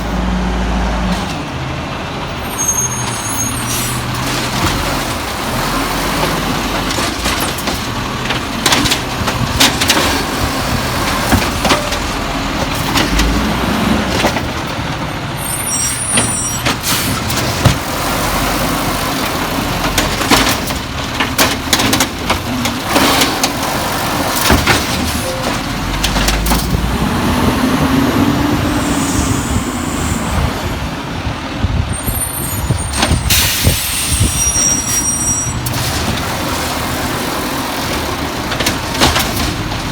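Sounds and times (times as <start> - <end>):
garbage truck diesel engine: 0.0 - 39.9
metal clanks and knocks: 19.2 - 26.9
air brake hisses: 33.3 - 35.0.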